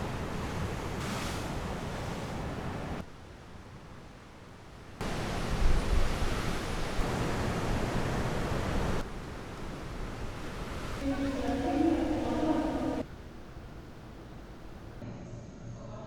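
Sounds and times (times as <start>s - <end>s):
sea surf rushing: 5.0s - 15.0s.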